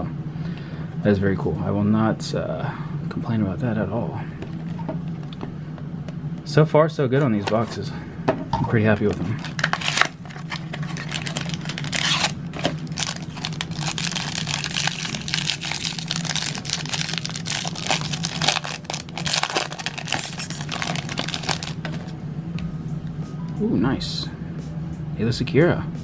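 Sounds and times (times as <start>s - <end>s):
steady low hum: 0.0s - 26.0s
packaging crinkling and rustling: 4.4s - 5.5s, 8.9s - 22.1s.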